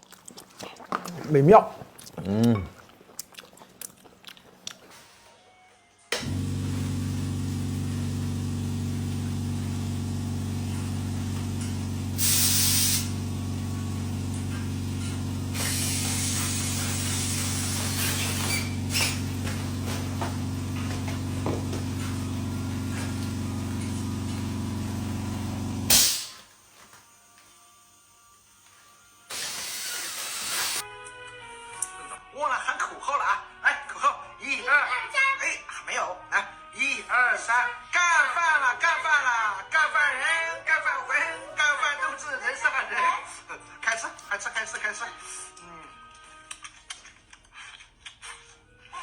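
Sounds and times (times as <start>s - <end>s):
low hum: 6.2s - 12.4s, 13.0s - 25.9s.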